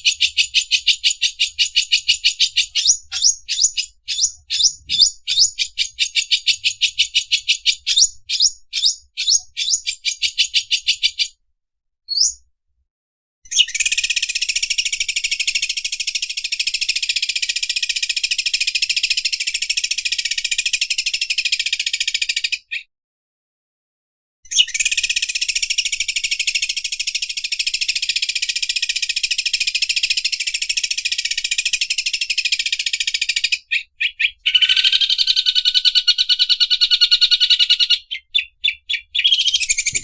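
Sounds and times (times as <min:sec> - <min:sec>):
bird chirping: 0:00.0 - 0:11.4, 0:12.1 - 0:12.5, 0:13.5 - 0:17.3, 0:24.5 - 0:40.0
bird fast rattling trill: 0:24.7 - 0:40.0.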